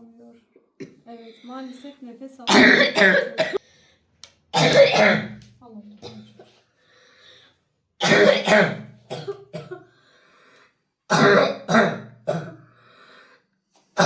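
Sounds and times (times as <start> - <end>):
boy coughing: 2.5 - 3.6, 4.6 - 5.4, 6.0 - 6.6, 8.0 - 10.0, 11.1 - 12.7.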